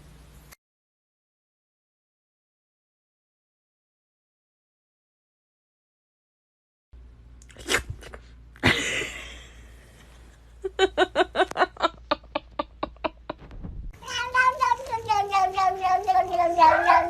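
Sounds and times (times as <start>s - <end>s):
loud sudden clatter: 13.3s - 14.0s
cat yowling: 15.4s - 17.0s.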